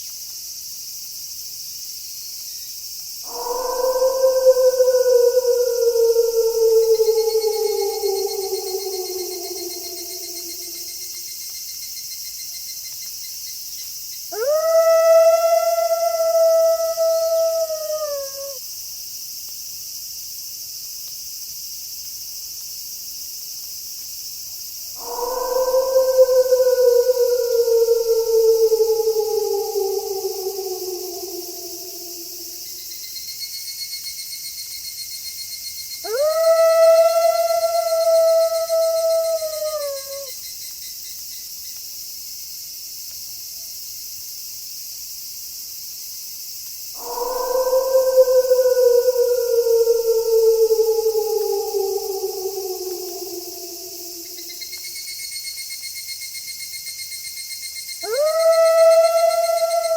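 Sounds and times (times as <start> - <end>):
high background hiss: 0.0 - 11.2, 24.7 - 32.8
crickets chirping: 0.0 - 59.9
wolf howling: 3.3 - 11.2, 14.3 - 18.6, 25.0 - 32.8, 36.0 - 40.3, 47.0 - 54.9, 58.0 - 59.9.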